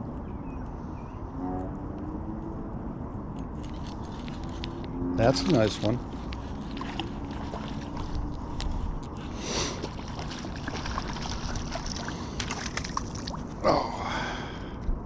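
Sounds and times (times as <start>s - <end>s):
water sloshing and trickling: 3.6s - 13.6s.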